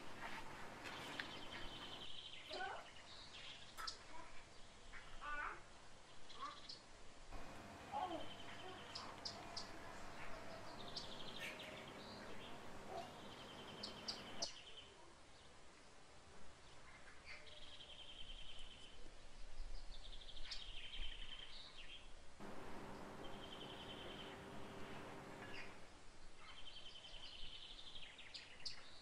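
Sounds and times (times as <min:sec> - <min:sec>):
small birds chirping: 0:00.0 - 0:15.9, 0:16.6 - 0:29.0
faint steady hum: 0:07.3 - 0:14.4, 0:22.4 - 0:26.1.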